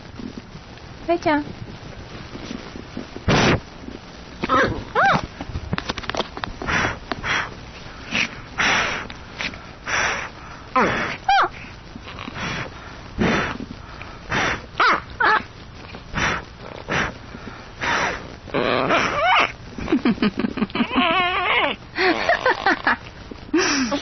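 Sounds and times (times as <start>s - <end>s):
dog whining: 4.4s - 5.3s, 10.8s - 11.6s, 14.8s - 15.5s, 17.9s - 19.6s, 20.8s - 22.4s
dog huffing and snorting: 6.6s - 11.3s.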